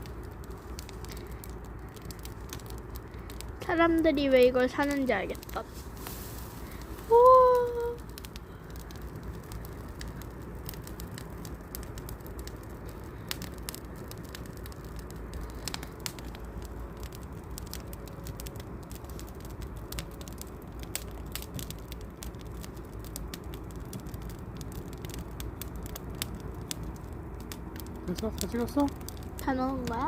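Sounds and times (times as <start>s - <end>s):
campfire crackling and popping: 0.0s - 30.0s
fire low rumble: 0.0s - 30.0s.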